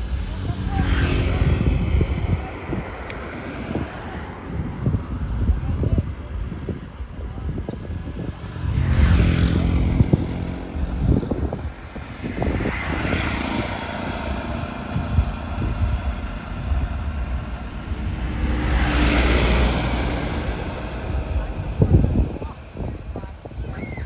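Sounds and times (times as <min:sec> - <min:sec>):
engine humming: 0:06.7 - 0:24.0
rushing noise: 0:07.3 - 0:24.0.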